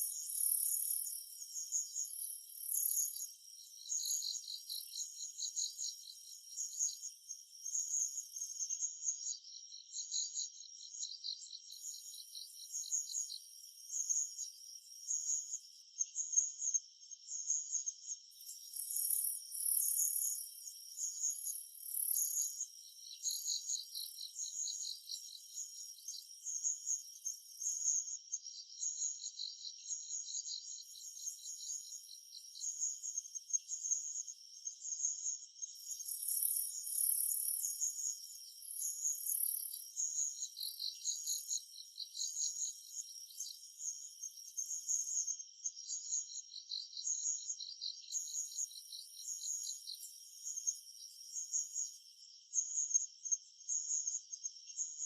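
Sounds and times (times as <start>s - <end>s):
insects pulsing in rapid trains: 35.7s - 52.0s.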